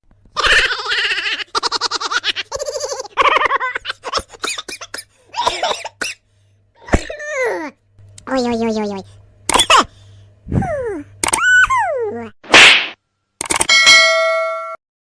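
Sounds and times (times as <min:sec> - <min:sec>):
comic laughter: 0:00.4 - 0:05.7.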